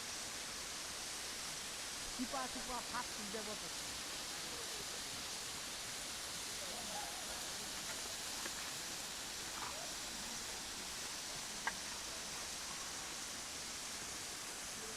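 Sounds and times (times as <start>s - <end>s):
waterfall rushing: 0.0s - 14.9s.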